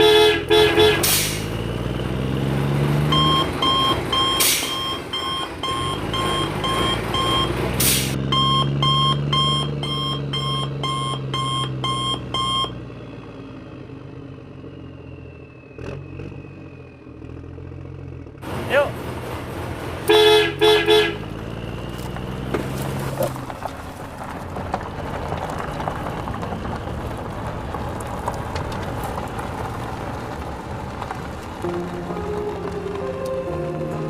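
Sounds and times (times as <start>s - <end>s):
toy reversing beeper: 3.0s - 7.6s, 8.3s - 12.8s.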